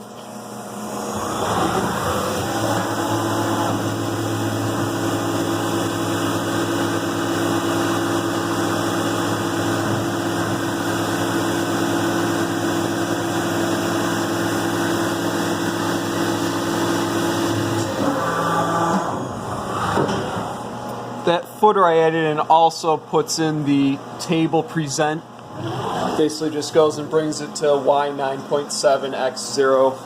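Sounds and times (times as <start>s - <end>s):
milling machine spindle hum: 0.0s - 21.3s.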